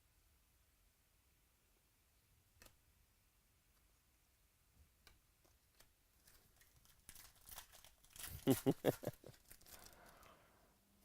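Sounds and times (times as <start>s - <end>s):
trading cards clicking and rustling: 5.5s - 10.3s.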